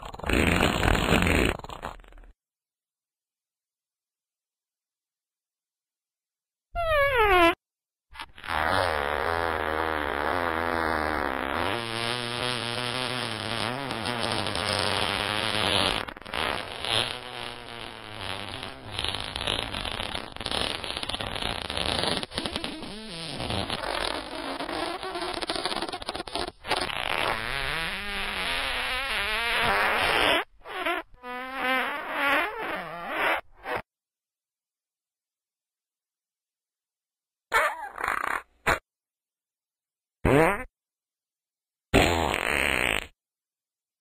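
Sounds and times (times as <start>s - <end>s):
buzzy farts: 0.0s - 2.4s, 6.8s - 7.6s, 8.2s - 33.9s, 37.5s - 38.8s, 40.2s - 40.7s, 42.0s - 43.2s.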